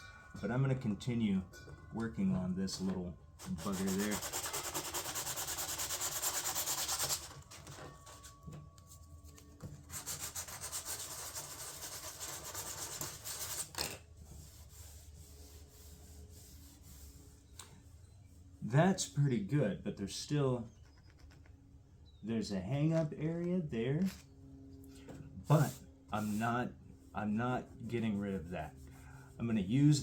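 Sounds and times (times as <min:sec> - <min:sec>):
sandpaper rasping on panel: 0:03.4 - 0:07.4, 0:09.9 - 0:17.4, 0:25.5 - 0:26.4.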